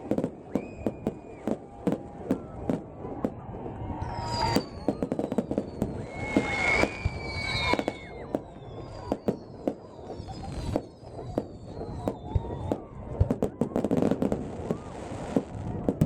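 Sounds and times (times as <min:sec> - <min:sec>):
firework bangs: 0:00.0 - 0:16.0
firework whistles falling in pitch: 0:00.2 - 0:02.4, 0:03.9 - 0:15.4.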